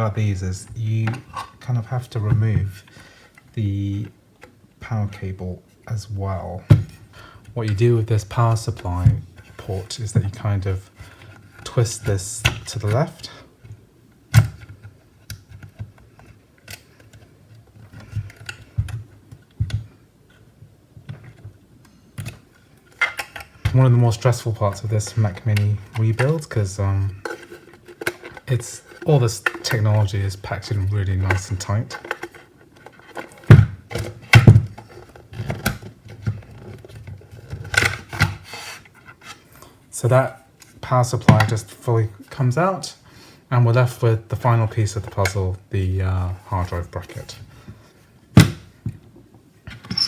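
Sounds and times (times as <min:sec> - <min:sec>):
handling knocks clicks and scrapes: 0:00.3 - 0:03.6, 0:06.6 - 0:39.6, 0:46.2 - 0:50.0.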